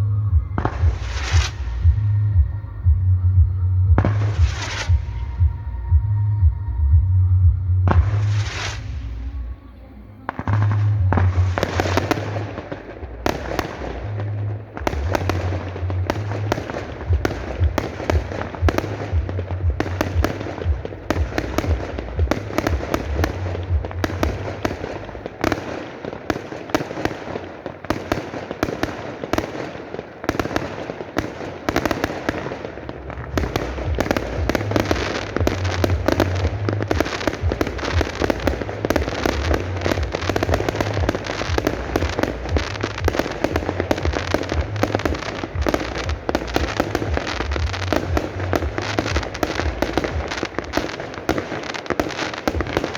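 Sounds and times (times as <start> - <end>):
fireworks bangs and crackling: 0.0 - 9.4, 10.2 - 52.9
deep booms: 0.0 - 9.7, 10.3 - 25.6, 31.8 - 51.5.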